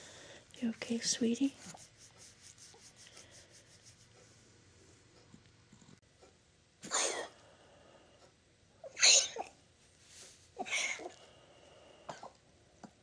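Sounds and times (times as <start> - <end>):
small dog coughing: 6.8 - 7.4, 8.9 - 9.6.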